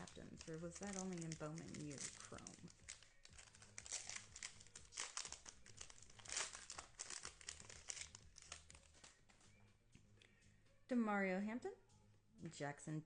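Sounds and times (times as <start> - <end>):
foil wrapper crinkling and tearing: 0.0 - 9.2.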